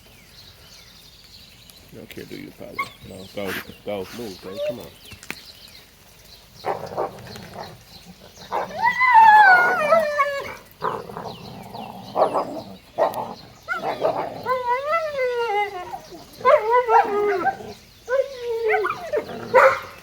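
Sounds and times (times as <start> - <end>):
dogs barking: 2.7 - 4.9, 6.6 - 20.0
dog whining: 4.4 - 4.9, 8.5 - 10.7, 12.2 - 19.8.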